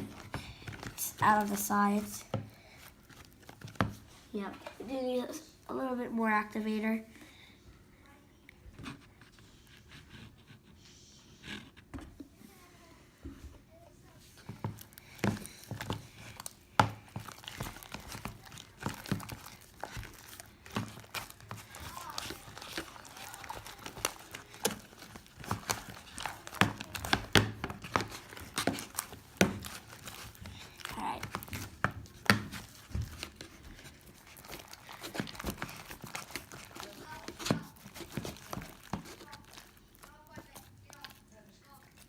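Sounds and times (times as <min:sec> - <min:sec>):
slime squished by hand: 0:14.5 - 0:42.0.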